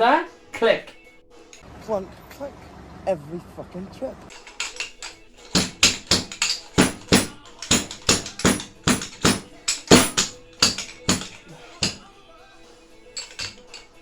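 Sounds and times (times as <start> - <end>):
rhythmic sharp tapping: 4.3 - 12.2.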